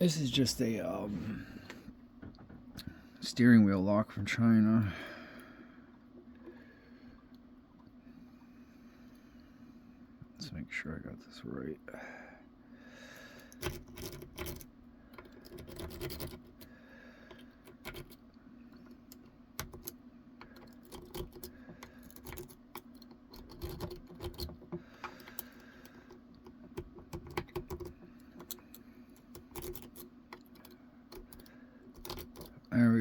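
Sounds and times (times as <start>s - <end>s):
lock picks clicking and scraping: 13.4s - 16.7s, 17.3s - 32.7s.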